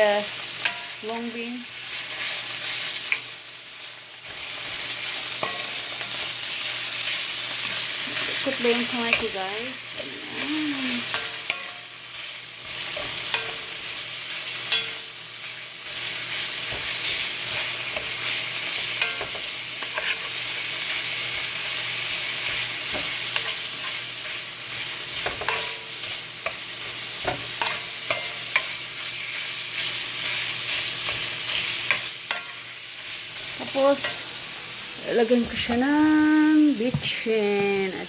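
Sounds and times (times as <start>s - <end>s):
meat sizzling in a pan: 0.0s - 38.0s
utensil scraping a pan: 15.9s - 20.4s.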